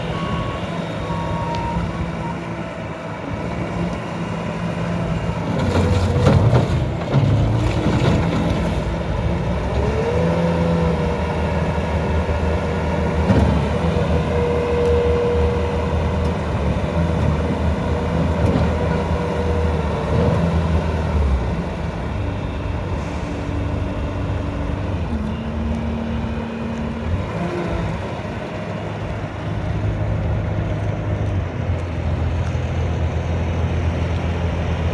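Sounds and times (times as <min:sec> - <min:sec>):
diesel engine running: 0:00.0 - 0:34.9.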